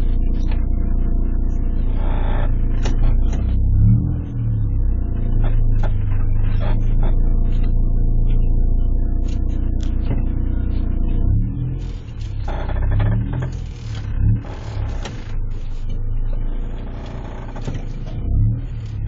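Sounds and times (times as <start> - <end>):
car engine driving: 0.0 - 19.0
road rumble: 0.0 - 19.0
creaks and clicks from car body: 2.0 - 3.7, 5.4 - 7.8, 11.8 - 19.0.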